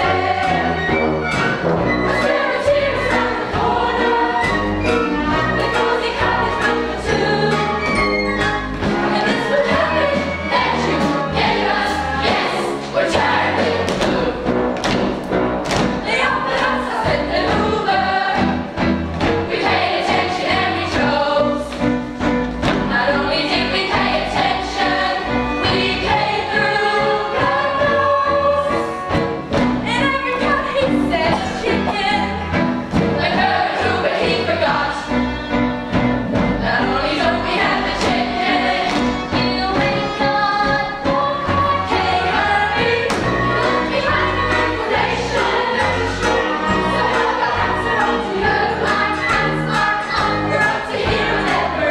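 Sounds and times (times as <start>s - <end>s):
ensemble singing musical chorus: 0.0s - 51.9s
instrumental accompaniment: 0.0s - 51.9s.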